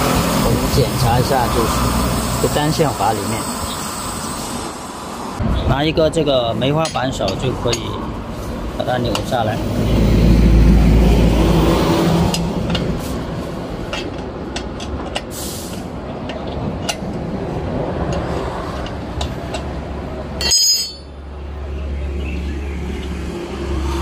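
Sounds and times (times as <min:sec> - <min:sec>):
loud whistling air hiss: 0:00.1 - 0:04.8.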